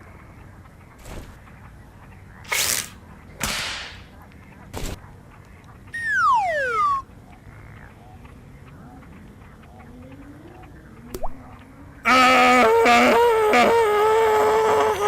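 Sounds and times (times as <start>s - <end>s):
falling whistle-like tone: 6.0s - 7.0s.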